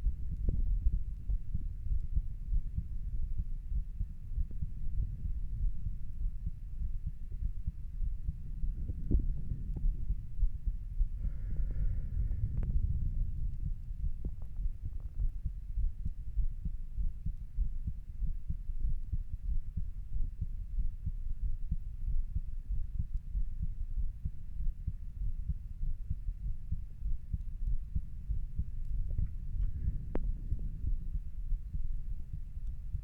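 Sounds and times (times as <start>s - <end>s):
heart beating: 0.0s - 33.0s.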